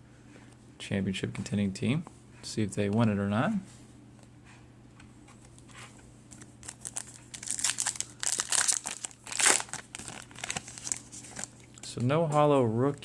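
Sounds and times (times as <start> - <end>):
foil wrapper crinkling and tearing: 6.6 - 11.6.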